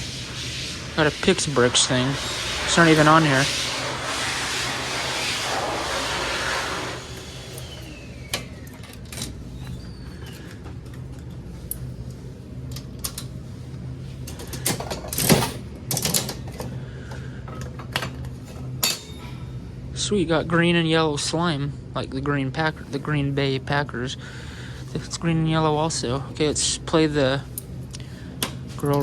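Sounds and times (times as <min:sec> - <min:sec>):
hiss: 0:00.0 - 0:08.3
steady low hum: 0:00.0 - 0:29.0.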